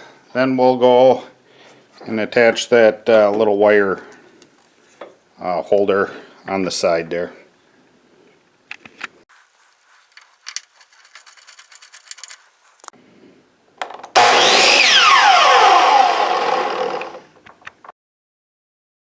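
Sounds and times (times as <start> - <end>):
miter saw motor whine: 14.2 - 17.3.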